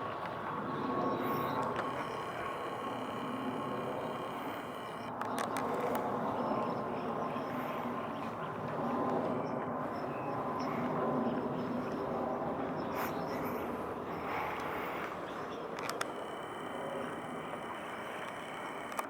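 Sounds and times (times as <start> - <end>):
faint constant tone: 0.0 - 19.0
low even hum: 0.0 - 19.0
sharp clicks: 1.2 - 6.7, 13.0 - 19.0.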